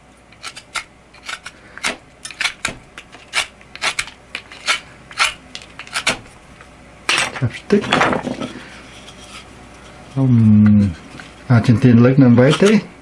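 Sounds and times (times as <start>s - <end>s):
knife shaving bamboo stick: 0.3s - 6.4s, 12.4s - 12.8s.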